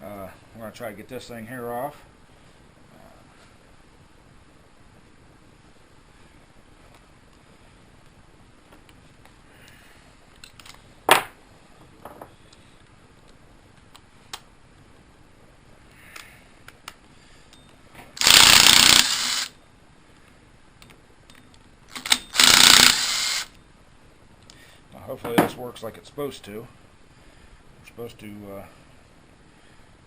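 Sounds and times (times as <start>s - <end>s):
impact wrench hammering: 18.2s - 19.5s, 22.0s - 23.3s.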